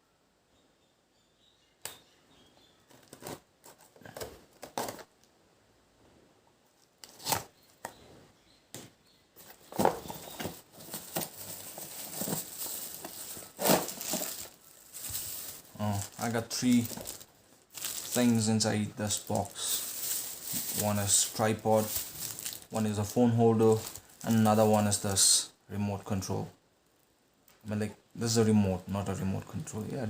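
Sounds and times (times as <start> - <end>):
packaging crinkling and rustling: 2.9 - 5.2, 9.4 - 25.1
box handling knocks and clicks: 8.7 - 14.4.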